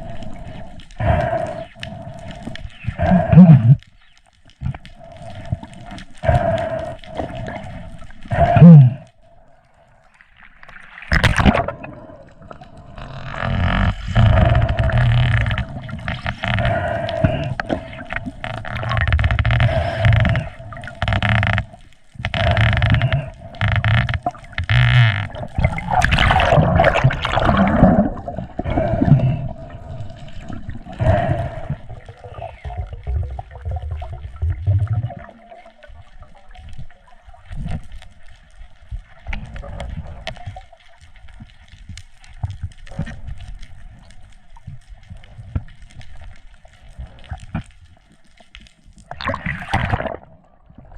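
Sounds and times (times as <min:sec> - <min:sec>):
water sloshing and gurgling: 0:00.0 - 0:50.9.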